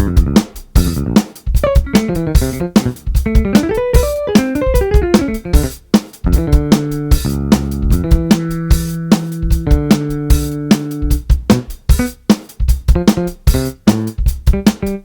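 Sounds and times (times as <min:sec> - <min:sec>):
polyphonic ringtone tune: 0:03.6 - 0:05.4.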